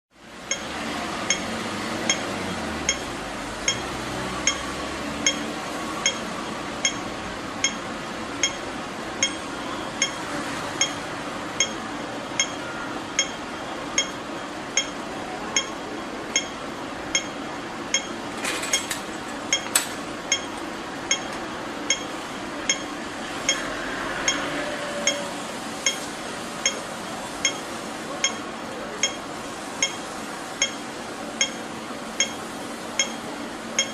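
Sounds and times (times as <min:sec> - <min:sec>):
steady background noise: 0:00.1 - 0:33.9
crossing signal ticks: 0:00.5 - 0:10.2, 0:10.8 - 0:11.8, 0:12.4 - 0:13.4, 0:14.0 - 0:15.0, 0:15.6 - 0:18.2, 0:19.5 - 0:26.8, 0:27.4 - 0:30.8, 0:31.4 - 0:31.6, 0:32.2 - 0:32.4, 0:33.0 - 0:33.2.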